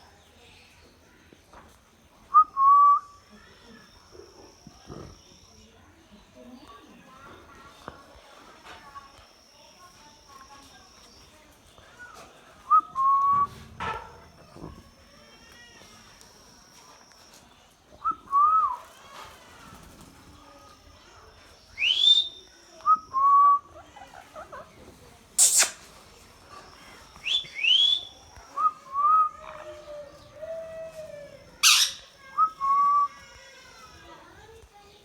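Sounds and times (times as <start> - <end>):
parrot whistling: 21.8 - 23.0, 27.2 - 29.6, 31.6 - 33.2
parrot screech: 25.4 - 25.9, 31.6 - 32.2.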